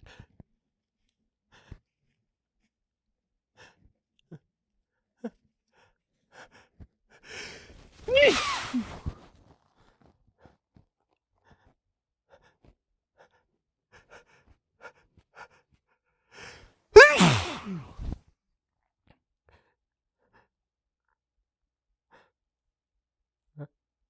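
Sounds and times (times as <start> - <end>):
man sneezing into tissues: 8.0 - 9.1, 17.0 - 18.2
man's catching breaths: 8.1 - 9.1, 17.0 - 18.2.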